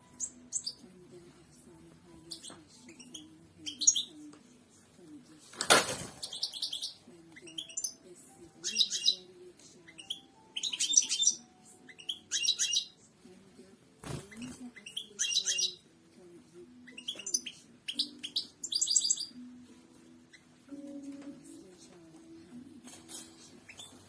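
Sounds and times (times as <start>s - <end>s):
goldfinch twittering song: 0.0s - 0.9s, 2.2s - 4.2s, 6.2s - 8.0s, 8.6s - 9.3s, 9.9s - 13.0s, 14.2s - 15.9s, 16.7s - 20.9s, 23.6s - 24.0s.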